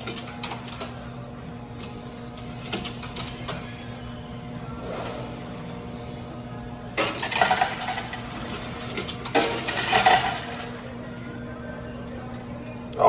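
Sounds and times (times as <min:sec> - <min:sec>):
coins clattering: 0:00.0 - 0:01.0, 0:02.4 - 0:03.7, 0:07.0 - 0:11.0.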